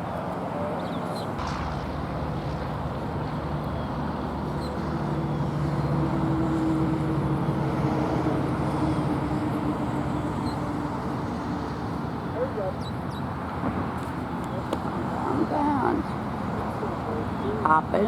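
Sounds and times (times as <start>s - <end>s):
vehicle engine hum: 0.0s - 18.0s
low rumble: 1.4s - 9.5s.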